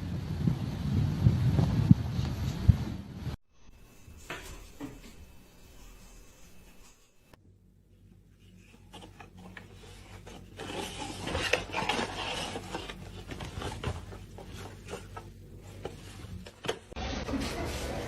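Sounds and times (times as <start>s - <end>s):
rustling and scraping: 3.8s - 7.3s, 8.3s - 18.0s.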